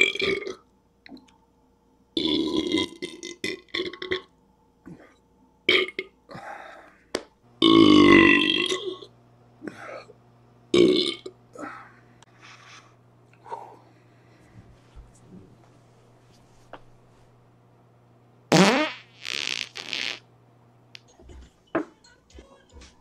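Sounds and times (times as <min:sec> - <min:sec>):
man burping: 0:07.6 - 0:10.1, 0:10.7 - 0:11.9.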